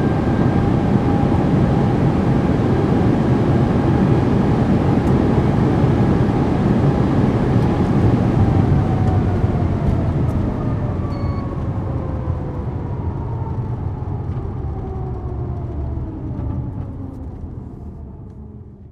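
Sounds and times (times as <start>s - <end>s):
wind and road noise: 0.0s - 18.9s
car engine coasting: 7.2s - 18.9s.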